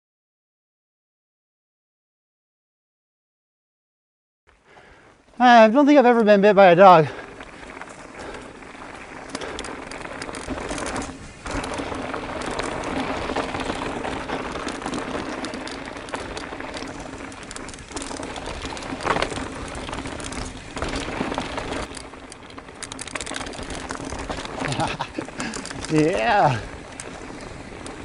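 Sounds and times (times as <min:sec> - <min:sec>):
bike tyres on dirt trail: 0:04.5 - 0:28.0
bike frame rattle: 0:07.0 - 0:28.0.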